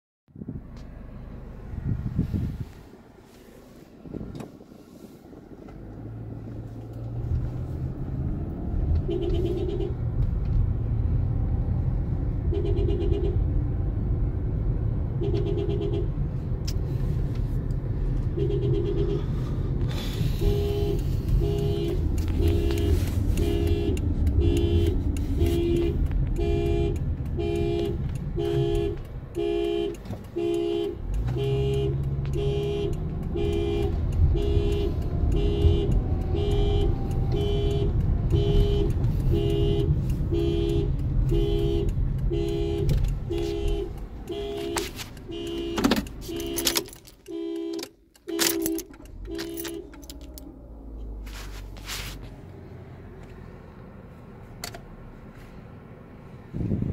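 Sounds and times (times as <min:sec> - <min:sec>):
car driving rumble: 0:00.3 - 0:56.9
car horn honking: 0:07.0 - 0:10.2, 0:12.3 - 0:13.8, 0:15.0 - 0:16.3, 0:18.2 - 0:52.2
clicks: 0:41.0 - 0:52.2.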